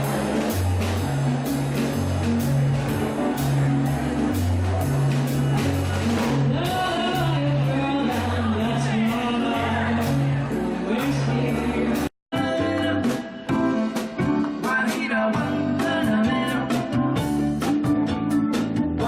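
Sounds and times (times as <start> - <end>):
music with walking bass: 0.0 - 19.0
person singing: 6.4 - 17.8.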